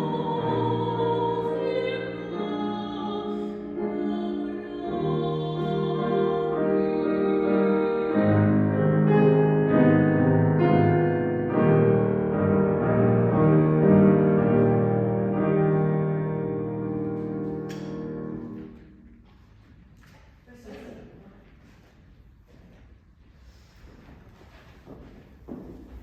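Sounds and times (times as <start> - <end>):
classical piano music: 0.0 - 19.8.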